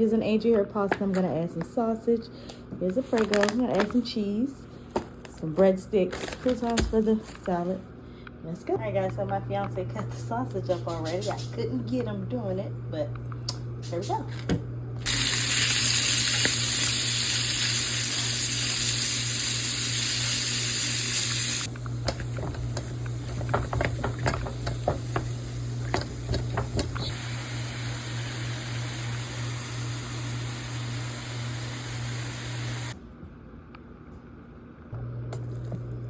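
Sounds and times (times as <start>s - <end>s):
low electrical hum: 0.0s - 36.0s
cooking hiss: 15.0s - 33.0s
utensils clinking and tapping: 21.9s - 27.1s.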